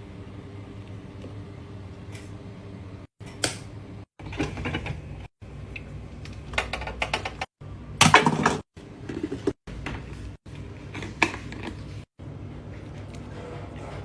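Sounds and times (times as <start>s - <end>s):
washing machine clicks and clatter: 6.2s - 10.2s.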